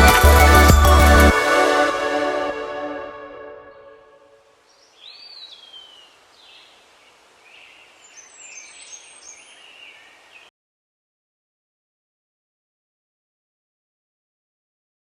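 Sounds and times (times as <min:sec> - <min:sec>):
background music: 0:00.0 - 0:04.4
low hiss: 0:04.6 - 0:10.5.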